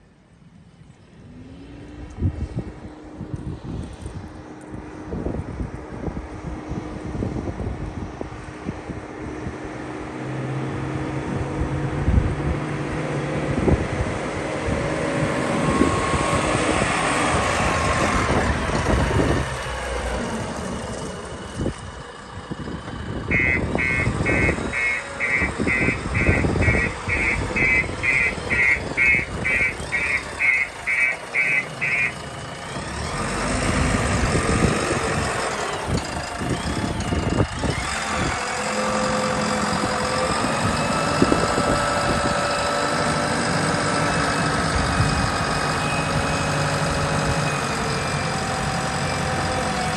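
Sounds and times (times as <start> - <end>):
diesel engine running: 0.0 - 49.9
high warning beeper: 23.3 - 32.2.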